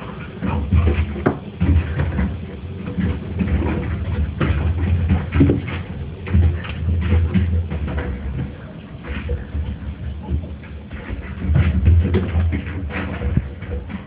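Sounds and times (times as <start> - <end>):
puppy scuffling and knocking: 0.4 - 14.0.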